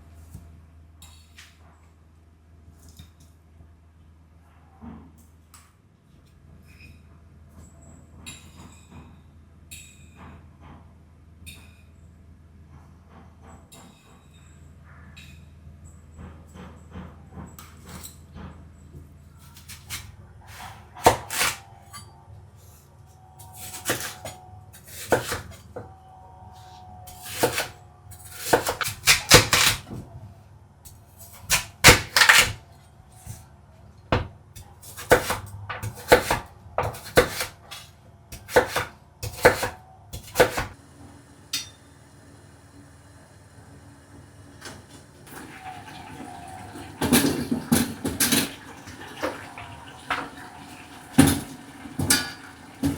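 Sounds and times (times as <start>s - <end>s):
cookware and utensils clattering: 23.5s - 25.8s, 45.4s - 52.9s.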